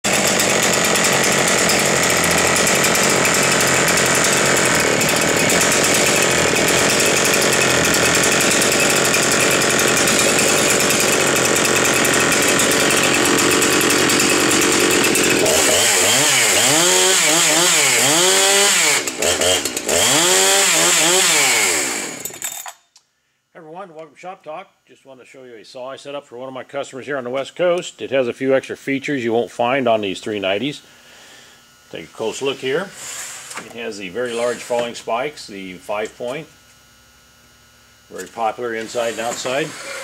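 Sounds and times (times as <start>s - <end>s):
chainsaw revving: 0.0s - 22.7s, 34.0s - 35.0s, 38.1s - 40.0s.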